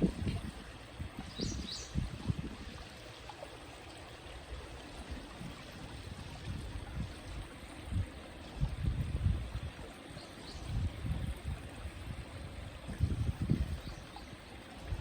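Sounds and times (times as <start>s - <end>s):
wind buffeting microphone: 0.0s - 3.0s, 5.2s - 15.0s
river flowing: 2.6s - 8.6s.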